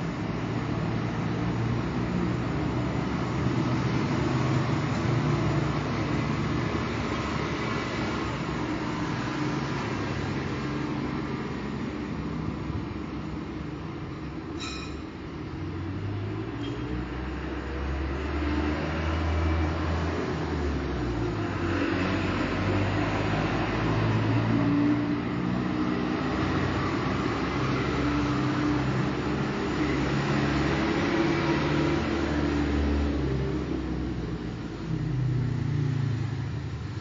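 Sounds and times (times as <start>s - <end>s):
passing car engines: 0.0s - 37.0s.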